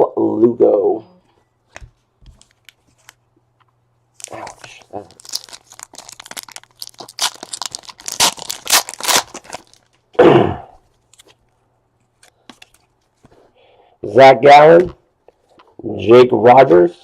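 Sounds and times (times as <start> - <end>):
foil packaging tearing and crinkling: 4.2 - 10.0.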